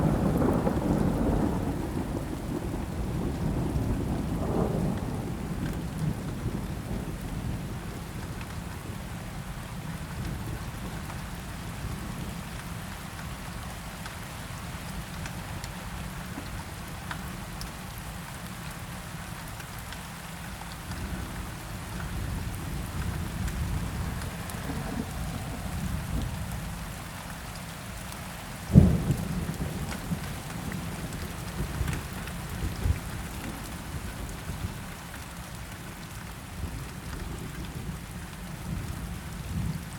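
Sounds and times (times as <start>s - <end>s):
rolling thunder rumbling: 0.0s - 8.1s, 21.0s - 27.1s, 28.7s - 34.8s
steady rain: 0.0s - 39.9s.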